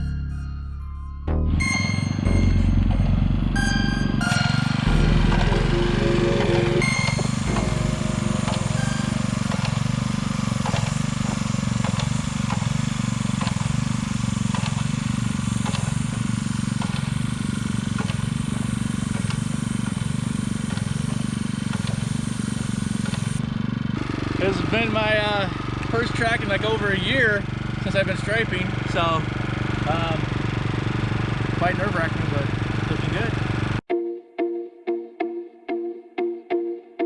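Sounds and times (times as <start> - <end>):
engine running steadily: 1.6 - 33.8.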